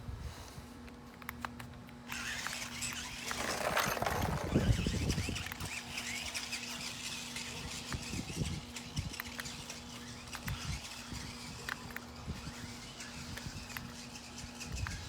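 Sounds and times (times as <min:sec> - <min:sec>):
toy car electric motors whirring: 0:01.5 - 0:15.0
short high squeaks: 0:02.1 - 0:07.6
toy car wheels rumbling: 0:02.1 - 0:15.0.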